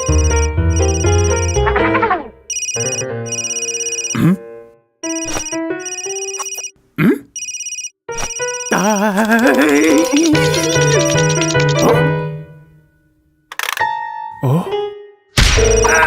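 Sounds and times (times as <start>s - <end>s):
cartoon telephone ringing: 0.0s - 4.2s, 5.0s - 6.8s, 7.4s - 11.8s
music: 0.0s - 6.3s, 9.7s - 16.0s.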